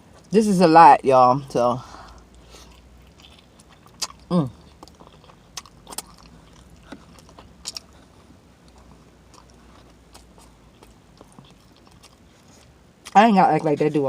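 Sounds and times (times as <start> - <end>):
person chewing with lip smacks: 2.1 - 13.7.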